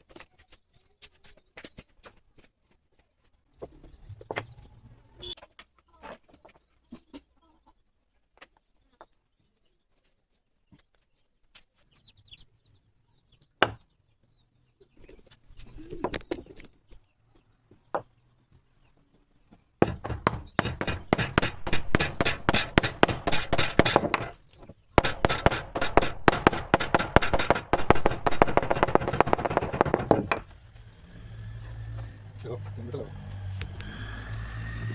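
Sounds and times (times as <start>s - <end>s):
tool strokes on wood: 19.8s - 24.4s, 25.0s - 34.9s
scattered knocks: 19.8s - 32.7s.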